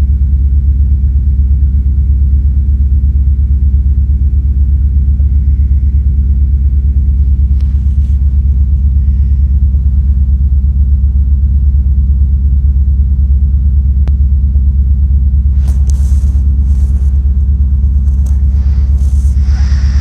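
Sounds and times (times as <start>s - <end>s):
cat purring: 15.6s - 20.0s.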